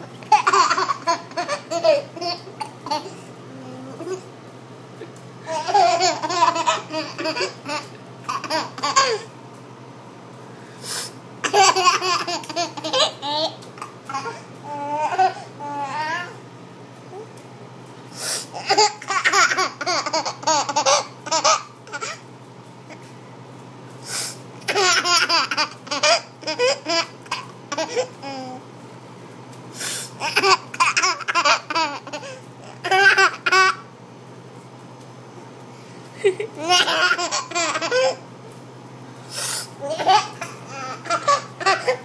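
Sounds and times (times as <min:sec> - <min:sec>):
baby laughing hysterically: 0:00.3 - 0:03.2, 0:05.5 - 0:09.3, 0:11.4 - 0:14.3, 0:18.6 - 0:22.2, 0:24.6 - 0:28.1, 0:30.2 - 0:33.8, 0:36.2 - 0:38.2, 0:39.8 - 0:42.0.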